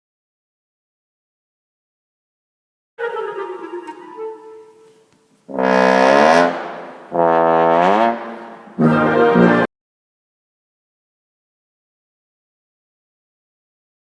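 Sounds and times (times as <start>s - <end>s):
low wind instrument notes: 3.0s - 9.7s.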